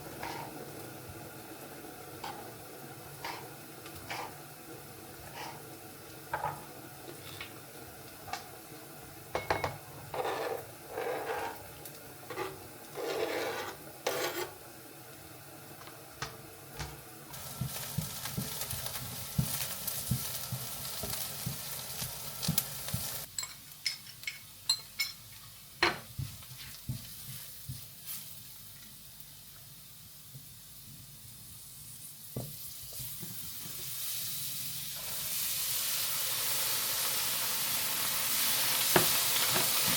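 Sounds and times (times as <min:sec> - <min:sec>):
food sizzling in pan: 0:00.0 - 0:14.8, 0:17.3 - 0:39.9
utensil scraping in pot: 0:00.1 - 0:00.6, 0:03.2 - 0:04.4, 0:05.2 - 0:05.7, 0:10.1 - 0:11.7, 0:12.3 - 0:14.6.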